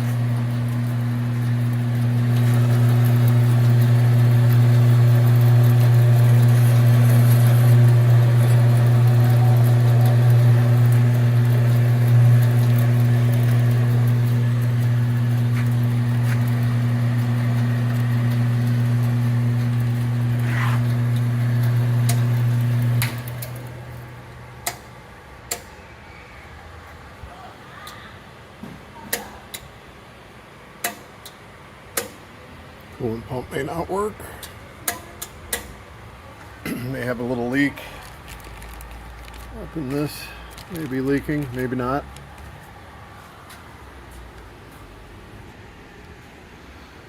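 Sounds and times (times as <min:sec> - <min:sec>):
bandsaw motor humming: 0:00.0 - 0:24.2, 0:36.9 - 0:42.4.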